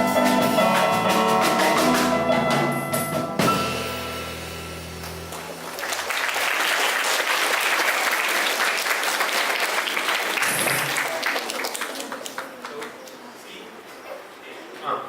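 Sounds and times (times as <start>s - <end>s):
jazz piano trio chord: 0.0s - 5.7s
audience applauding: 5.0s - 13.2s.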